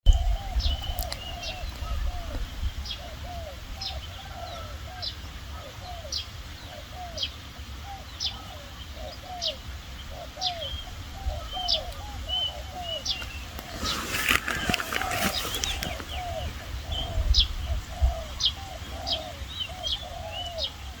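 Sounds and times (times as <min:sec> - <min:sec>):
dove cooing: 0:07.9 - 0:21.0.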